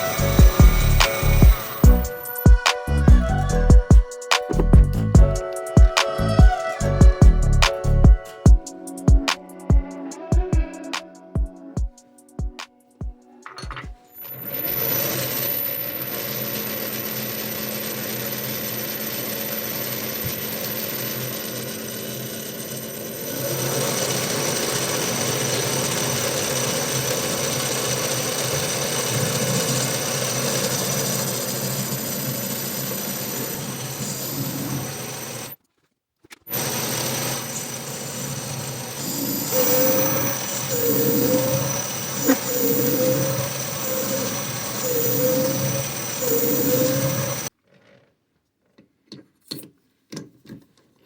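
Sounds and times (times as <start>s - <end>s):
metal lathe motor humming: 0.0s - 2.3s, 14.3s - 35.6s, 36.5s - 47.5s.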